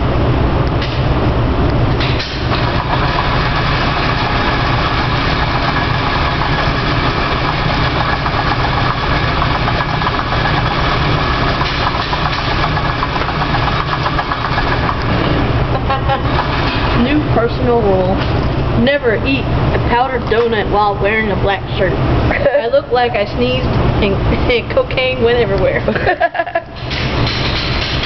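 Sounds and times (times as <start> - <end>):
vehicle engine running: 2.5 - 18.1.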